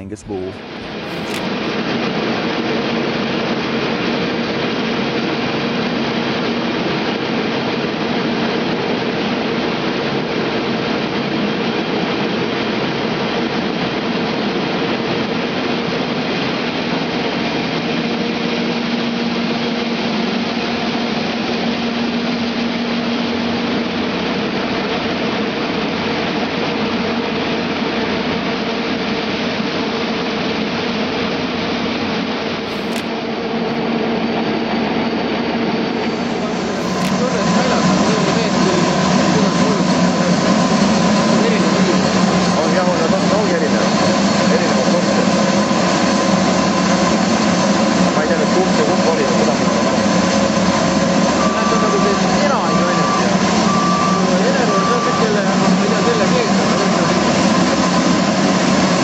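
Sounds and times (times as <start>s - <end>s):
roller mill running: 48.2s - 59.0s.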